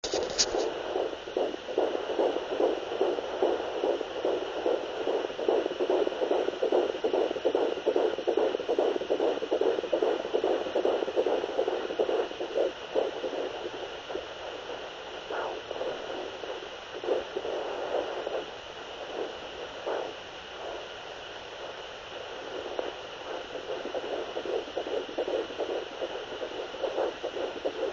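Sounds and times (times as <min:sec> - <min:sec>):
steady hiss: 0:00.0 - 0:07.9
fetal heartbeat on doppler: 0:00.0 - 0:27.9.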